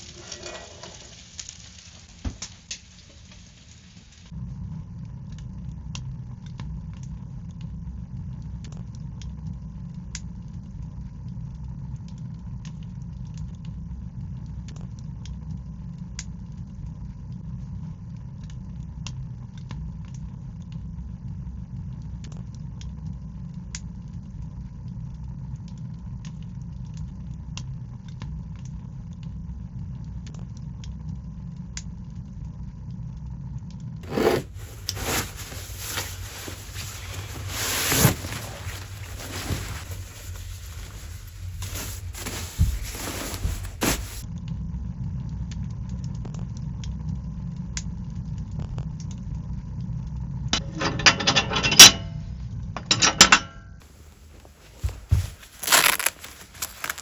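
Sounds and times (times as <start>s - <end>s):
fire crackling in stove: 0.0s - 57.0s
heavy bumps: 34.0s - 44.2s, 53.9s - 57.0s.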